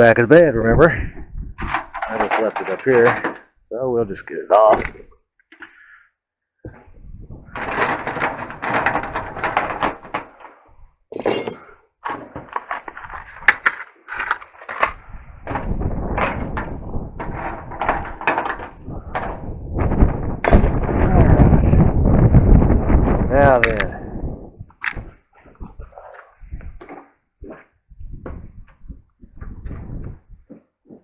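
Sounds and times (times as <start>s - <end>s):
wind buffeting microphone: 0.0s - 3.0s, 6.7s - 11.0s, 14.8s - 31.0s
objects clattering on metal: 1.6s - 3.5s, 7.5s - 14.9s, 15.5s - 19.4s, 20.4s - 21.0s.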